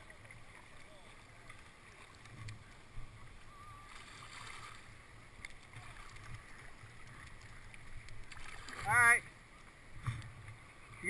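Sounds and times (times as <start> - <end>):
faint clicks: 5.3 - 8.6.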